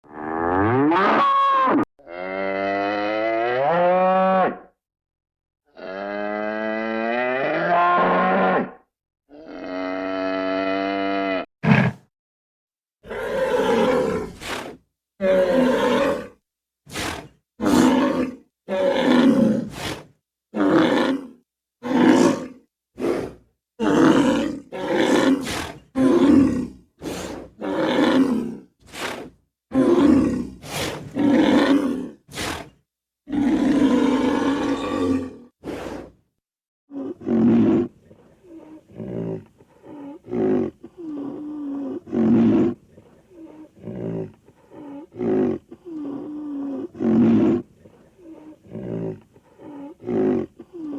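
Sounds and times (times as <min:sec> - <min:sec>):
bull roaring and bellowing: 0:13.0 - 0:20.0, 0:20.6 - 0:36.2.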